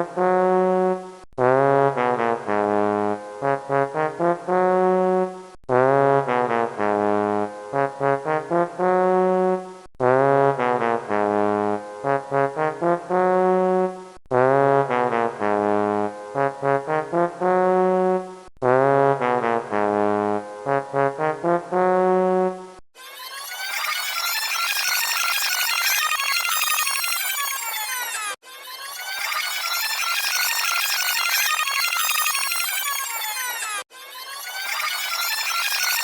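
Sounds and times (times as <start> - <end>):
brass tune loop: 0.0 - 22.8.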